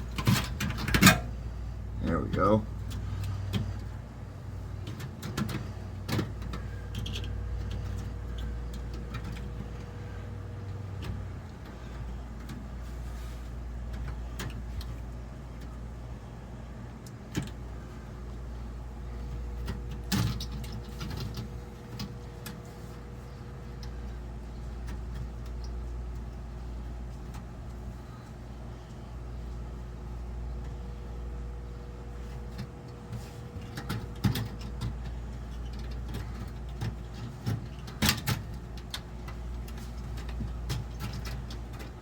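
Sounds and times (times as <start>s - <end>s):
steady low hum: 0.0s - 42.0s.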